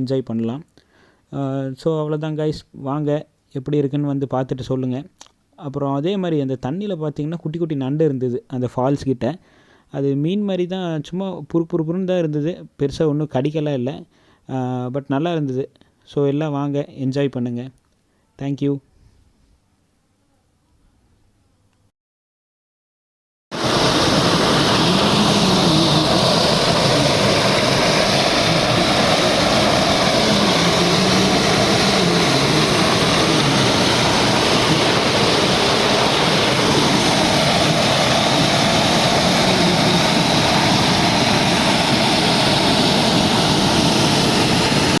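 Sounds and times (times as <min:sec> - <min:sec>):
waterfall rushing: 0:23.6 - 0:45.0.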